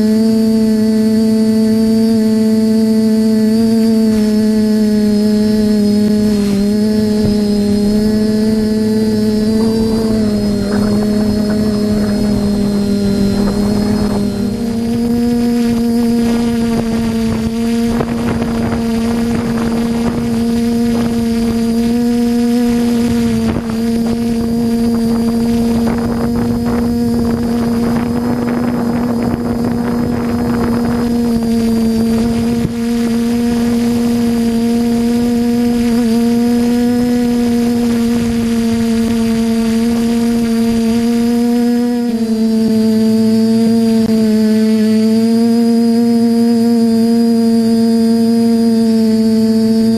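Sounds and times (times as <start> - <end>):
drone propellers whining: 0.0 - 49.9
rushing noise: 6.5 - 20.2.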